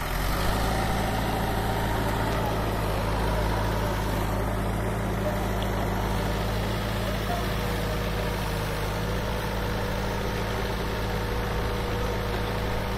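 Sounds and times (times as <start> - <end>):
excavator diesel engine running: 0.0 - 12.9.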